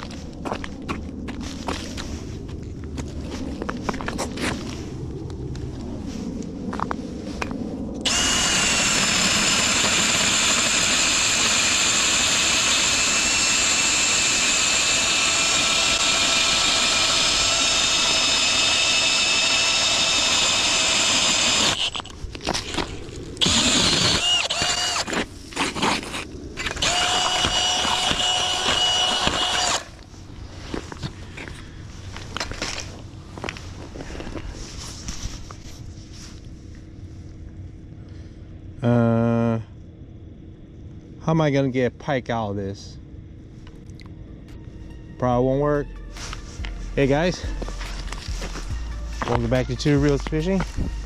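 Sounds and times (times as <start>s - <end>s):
cordless drill motor whine: 8.0s - 30.1s, 44.5s - 51.0s.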